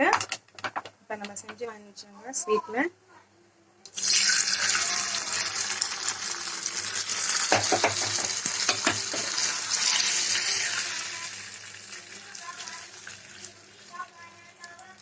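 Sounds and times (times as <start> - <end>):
hot ghee sizzling: 3.9 - 15.0.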